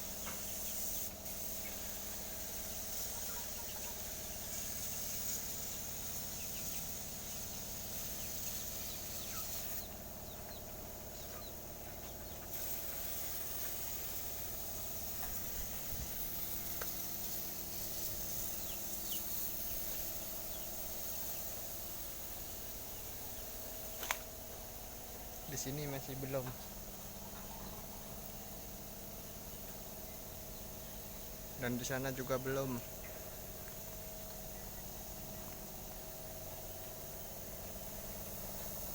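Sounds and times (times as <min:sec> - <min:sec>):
high insect drone: 0:00.0 - 0:38.9
steady low hum: 0:00.0 - 0:38.9
short bird chirps: 0:07.5 - 0:10.6.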